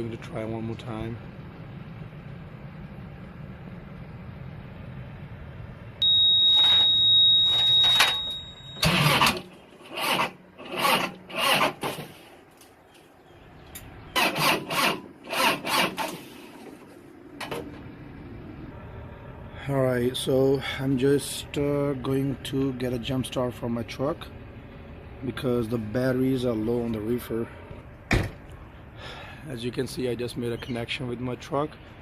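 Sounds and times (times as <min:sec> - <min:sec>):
high-pitched tone: 0:06.0 - 0:09.0
engine cranking slowly: 0:08.8 - 0:12.2, 0:13.7 - 0:16.8.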